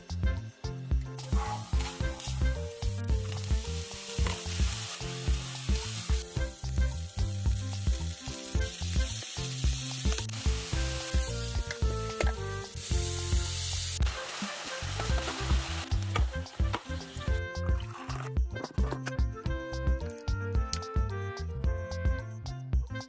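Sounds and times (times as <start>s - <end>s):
background music with beat: 0.0s - 23.0s
food sizzling in frying pan: 1.2s - 12.0s, 12.6s - 17.4s.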